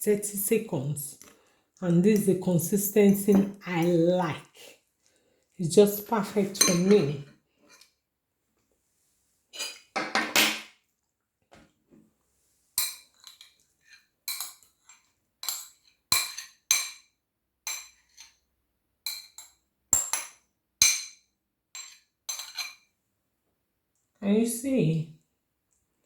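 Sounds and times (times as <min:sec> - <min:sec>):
cutlery scraping a plate: 0:09.5 - 0:10.7, 0:12.8 - 0:17.0, 0:21.8 - 0:22.9
cutlery clinking on a plate: 0:09.6 - 0:10.8, 0:14.3 - 0:17.1, 0:19.1 - 0:22.9.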